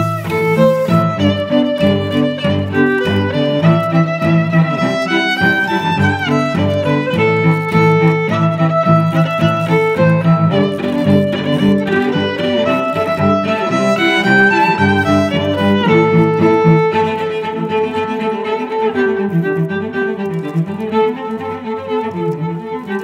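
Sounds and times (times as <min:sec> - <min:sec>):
violin and cello playing: 0:00.0 - 0:23.0.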